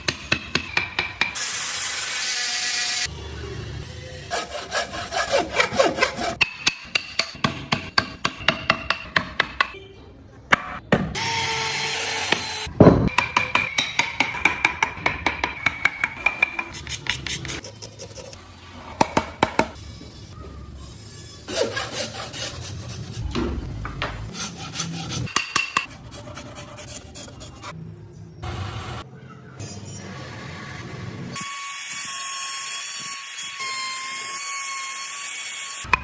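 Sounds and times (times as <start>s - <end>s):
hand tool rasping wood: 4.3s - 6.4s.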